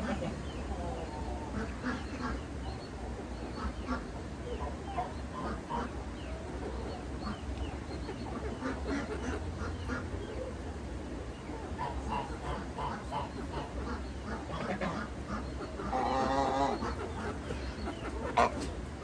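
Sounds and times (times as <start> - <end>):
geese honking: 3.5 - 10.3, 11.6 - 19.0.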